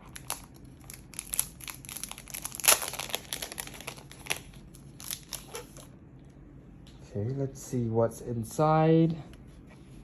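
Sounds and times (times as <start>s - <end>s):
packaging crinkling: 0.0s - 5.9s.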